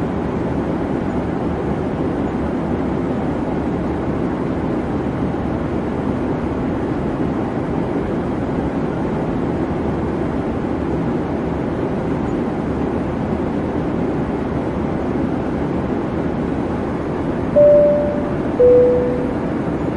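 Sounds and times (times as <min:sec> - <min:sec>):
airliner cabin engine drone: 0:00.0 - 0:19.9
cabin chime: 0:17.6 - 0:19.6.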